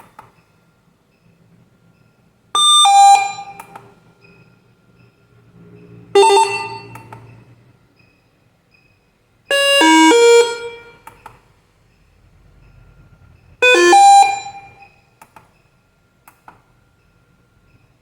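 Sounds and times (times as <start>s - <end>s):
electronic call chime: 2.6s - 3.7s, 6.2s - 7.5s, 13.6s - 15.0s.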